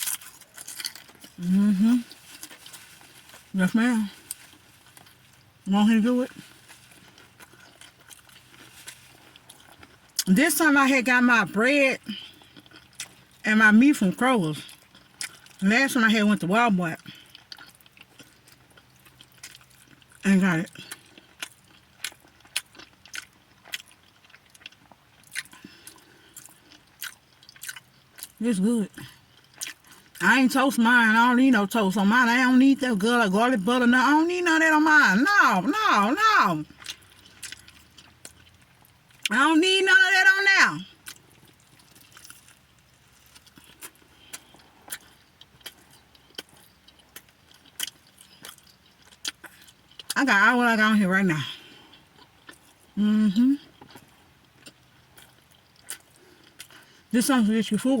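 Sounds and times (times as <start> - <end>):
person chewing: 0.0 - 10.3, 12.0 - 13.4, 14.6 - 15.6, 17.0 - 30.2, 36.6 - 39.3, 40.8 - 50.2, 51.4 - 57.1.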